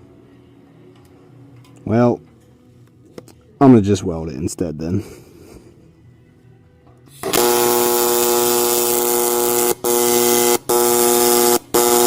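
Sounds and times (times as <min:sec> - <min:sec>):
welding arc buzzing: 0:07.2 - 0:12.0.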